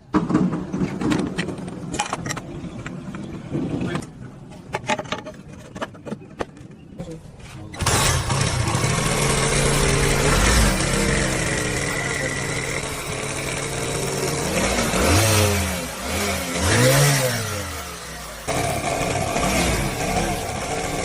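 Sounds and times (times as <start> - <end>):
motorcycle engine revving: 7.8 - 21.0.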